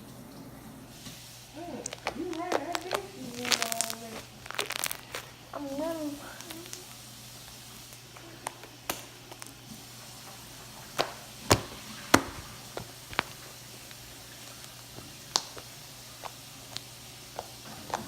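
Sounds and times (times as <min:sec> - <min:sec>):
slime clicking and popping: 0:01.8 - 0:05.4, 0:08.4 - 0:09.6, 0:10.9 - 0:18.0.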